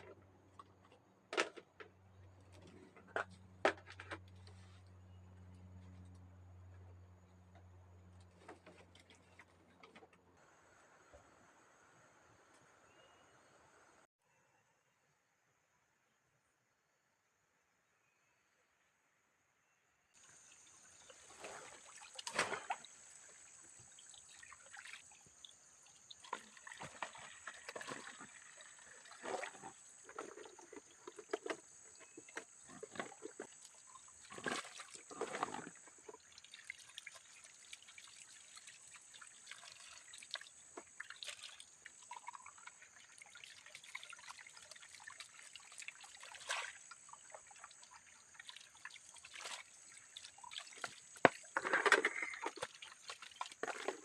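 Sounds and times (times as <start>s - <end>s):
water trickling and splashing: 20.2s - 54.0s.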